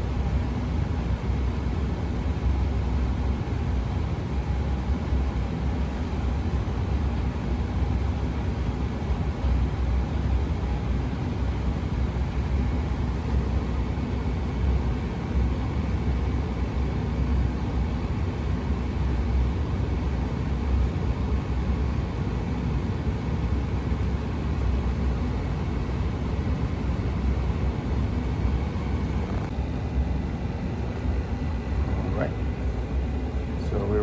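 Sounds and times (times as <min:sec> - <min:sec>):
gas furnace low rumble: 0:00.0 - 0:34.0.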